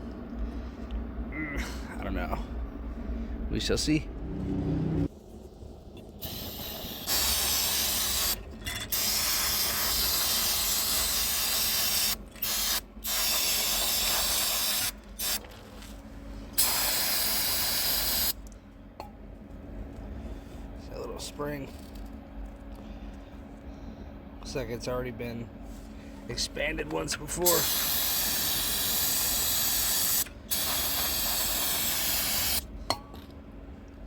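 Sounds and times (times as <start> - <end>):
aerosol can spray hissing: 6.2 - 8.4, 9.0 - 15.4, 16.6 - 18.4, 27.5 - 32.6.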